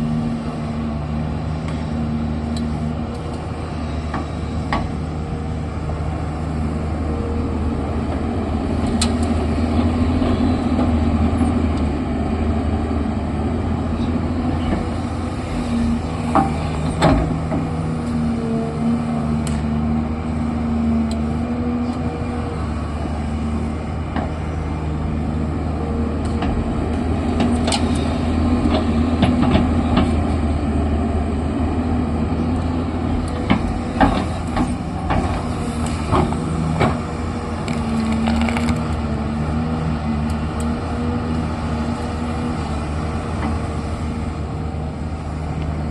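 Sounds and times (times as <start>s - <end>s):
diesel engine working: 0.0s - 45.9s.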